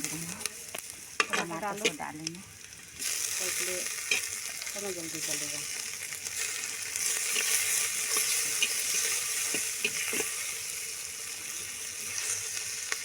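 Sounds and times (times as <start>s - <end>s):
food sizzling in hot oil: 0.0s - 13.0s
stirring scrapes and knocks: 4.0s - 4.6s, 7.0s - 10.6s.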